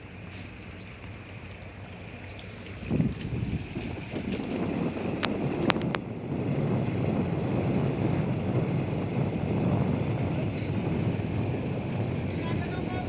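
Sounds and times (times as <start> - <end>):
boat engine running: 0.0 - 13.0
water noise: 0.0 - 13.0
wind noise on microphone: 2.6 - 13.0.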